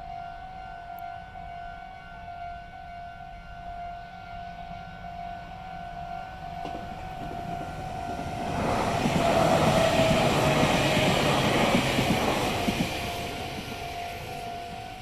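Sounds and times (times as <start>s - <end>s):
level crossing warning bell: 0.0s - 8.6s, 9.6s - 15.0s
train passing: 4.9s - 15.0s.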